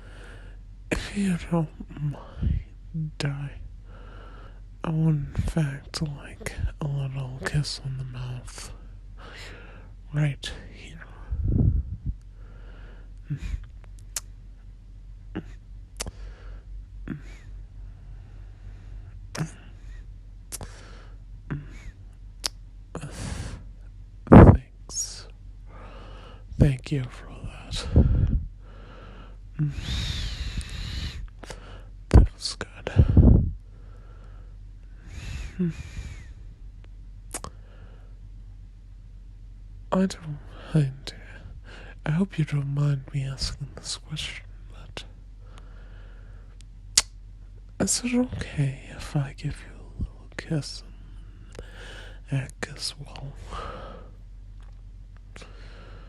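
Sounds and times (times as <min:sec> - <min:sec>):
soft breathing: 0:00.0 - 0:02.8, 0:03.4 - 0:13.8, 0:15.4 - 0:22.0, 0:23.0 - 0:23.8, 0:25.6 - 0:26.6, 0:27.4 - 0:32.0, 0:32.6 - 0:36.6, 0:37.5 - 0:38.3, 0:40.2 - 0:42.1, 0:44.6 - 0:46.6, 0:49.6 - 0:52.3, 0:53.0 - 0:54.2, 0:55.2 - 0:56.0
low voiced sound: 0:00.9 - 0:03.7, 0:04.8 - 0:08.8, 0:13.2 - 0:13.6, 0:15.3 - 0:15.6, 0:17.0 - 0:17.4, 0:21.5 - 0:21.9, 0:35.2 - 0:36.3
lip smacks: 0:13.8 - 0:14.3, 0:16.0 - 0:16.2, 0:20.5 - 0:20.8, 0:22.4 - 0:22.6, 0:36.8 - 0:37.6, 0:46.6 - 0:47.2.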